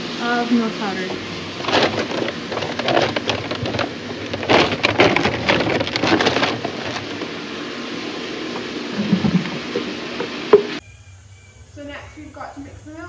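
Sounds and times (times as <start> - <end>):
powder pouring hiss: 0.0 - 13.0
dense clatter: 0.8 - 7.4.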